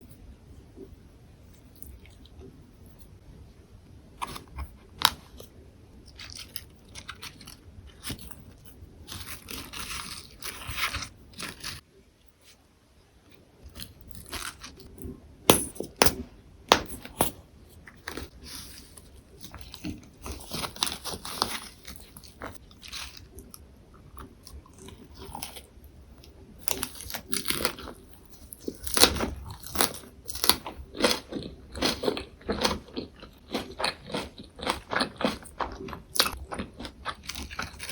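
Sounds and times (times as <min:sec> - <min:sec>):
crunching fresh leaves: 0:06.1 - 0:11.8, 0:18.0 - 0:23.5
wet chewing: 0:26.7 - 0:37.9.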